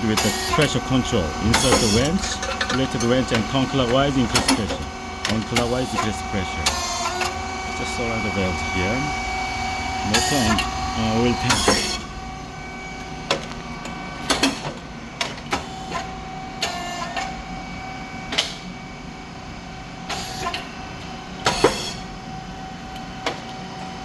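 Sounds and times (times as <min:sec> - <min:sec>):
machine motor humming: 0:00.0 - 0:19.3
held whine: 0:00.0 - 0:20.0
mechanical clicks and knocks: 0:01.5 - 0:07.3.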